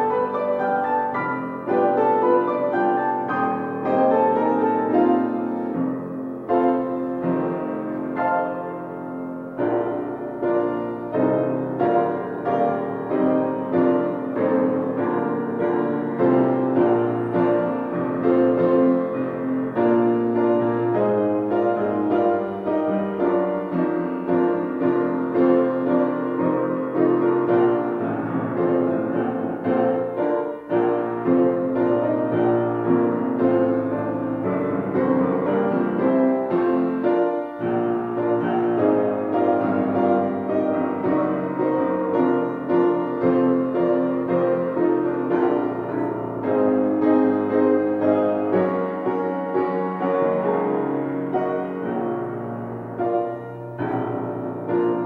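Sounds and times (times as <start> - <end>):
piano music: 0.0 - 55.0.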